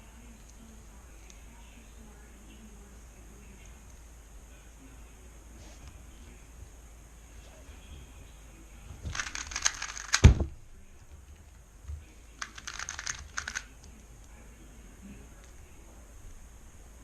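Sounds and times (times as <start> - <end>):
puzzle cube clicking: 9.1 - 10.4, 12.4 - 14.0
loud thump: 10.2 - 10.6.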